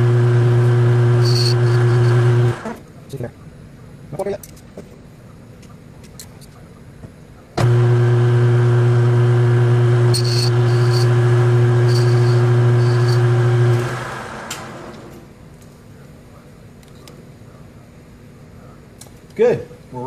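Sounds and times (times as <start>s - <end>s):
lathe motor humming: 0.0s - 2.8s, 7.6s - 15.2s
high squeaks: 10.1s - 13.5s.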